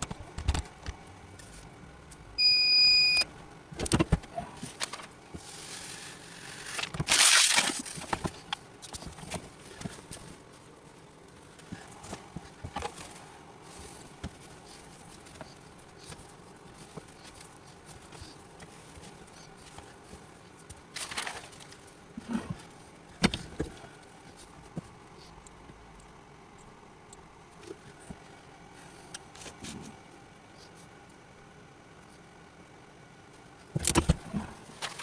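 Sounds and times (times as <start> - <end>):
rustling materials: 3.8 - 25.4, 33.6 - 35.0.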